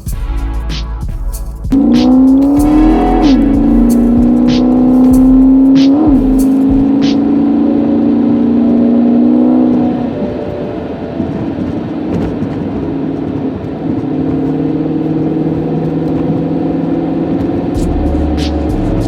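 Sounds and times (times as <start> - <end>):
car engine while driving: 1.7 - 10.2, 11.8 - 19.0.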